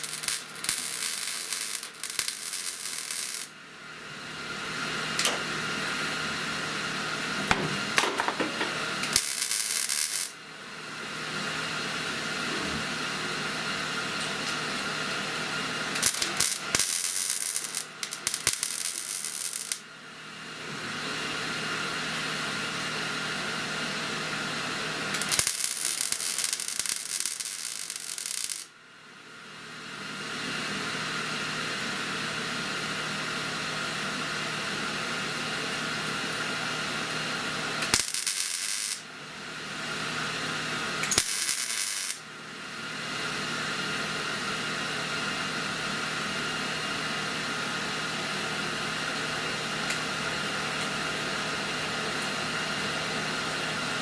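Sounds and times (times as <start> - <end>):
welding arc crackle: 0.0 - 3.6, 7.9 - 10.4, 15.9 - 19.9, 25.1 - 28.7, 37.8 - 39.1, 41.0 - 42.3
shop equipment hiss and hum: 0.0 - 54.0.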